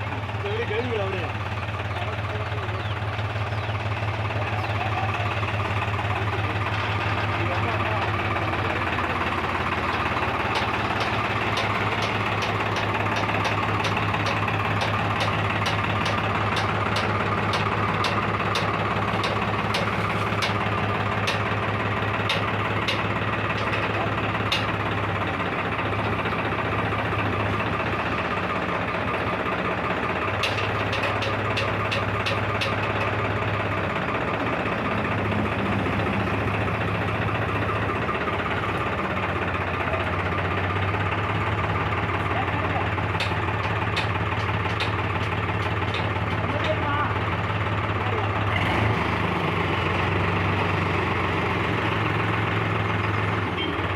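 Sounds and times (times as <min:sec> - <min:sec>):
tractor diesel engine running: 0:00.0 - 0:53.9
sharp metallic clicks: 0:08.0 - 0:25.4, 0:30.4 - 0:33.2.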